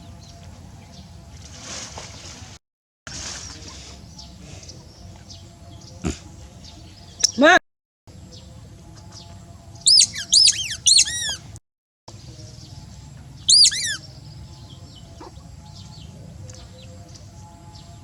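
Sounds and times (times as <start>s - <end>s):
high-pitched animal chirps: 9.9s - 11.5s, 13.5s - 14.0s.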